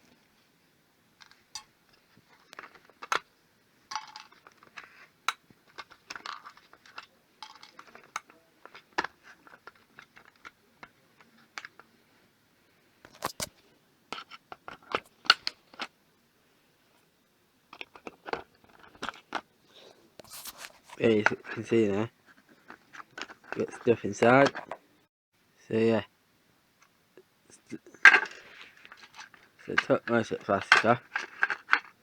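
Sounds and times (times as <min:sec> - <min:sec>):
plastic and metal parts pried off: 0:03.9 - 0:10.6, 0:13.1 - 0:13.5, 0:22.6 - 0:24.8, 0:28.0 - 0:32.0.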